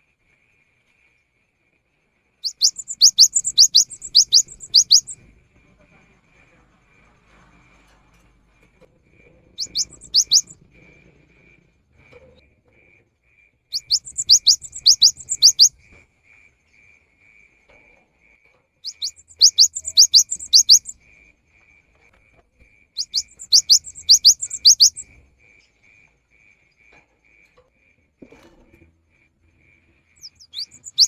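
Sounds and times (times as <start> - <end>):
faint regular ticking: 2.4 - 5.2
bird whistling song: 2.4 - 5.3, 9.5 - 10.7, 13.7 - 15.8, 18.8 - 21.0, 23.0 - 25.2, 30.2 - 31.0.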